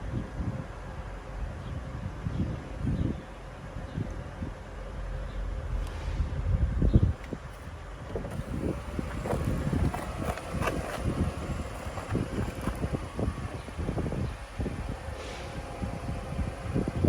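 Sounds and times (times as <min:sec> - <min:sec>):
wind buffeting microphone: 0:06.0 - 0:17.0.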